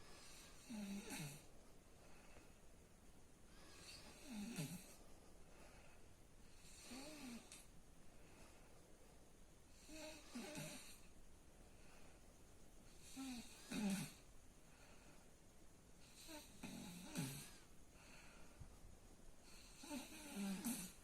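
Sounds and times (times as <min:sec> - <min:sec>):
person snoring: 0:00.2 - 0:01.5, 0:03.7 - 0:05.0, 0:06.5 - 0:07.6, 0:09.8 - 0:11.0, 0:13.0 - 0:14.2, 0:16.0 - 0:17.6, 0:19.5 - 0:21.0.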